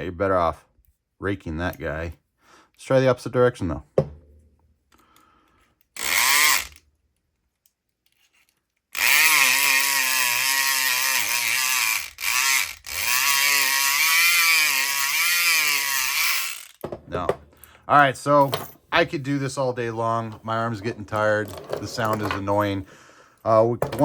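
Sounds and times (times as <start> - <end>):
electric pick gun vibrating: 6.0 - 6.8, 9.0 - 17.0.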